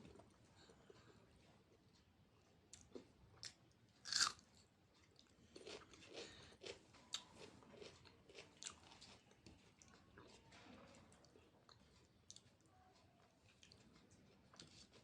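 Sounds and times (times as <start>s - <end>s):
person chewing: 2.7s - 10.4s.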